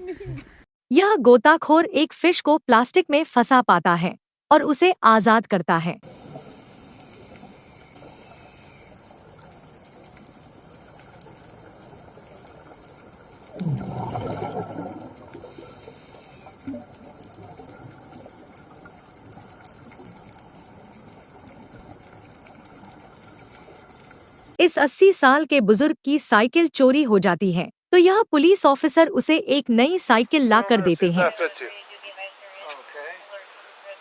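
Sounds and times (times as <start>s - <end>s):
steady low underwater hiss: 6.0s - 24.6s, 31.0s - 34.0s
diver's exhaled air bubbling: 13.5s - 20.2s.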